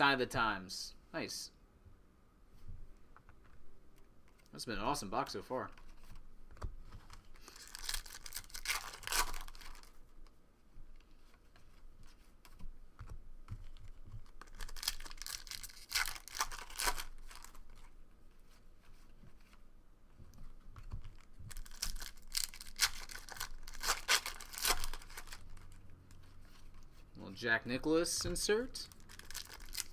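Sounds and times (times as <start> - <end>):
foil wrapper tearing and crinkling: 7.4 - 10.0, 14.3 - 17.8, 21.1 - 25.8, 28.9 - 29.9.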